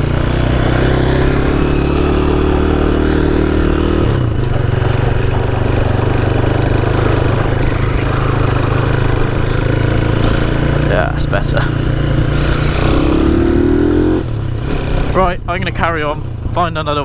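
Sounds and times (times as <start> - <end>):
small motorcycle engine running: 0.0 - 15.3.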